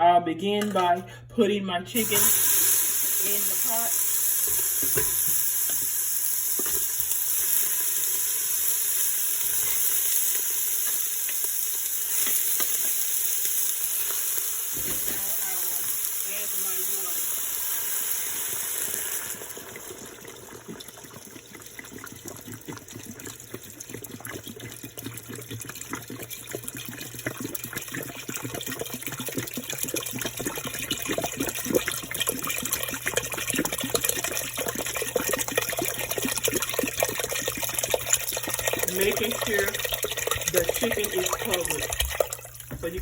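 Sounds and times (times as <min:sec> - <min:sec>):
water pouring into a pot: 0:02.0 - 0:43.0
water splashing: 0:19.4 - 0:43.0.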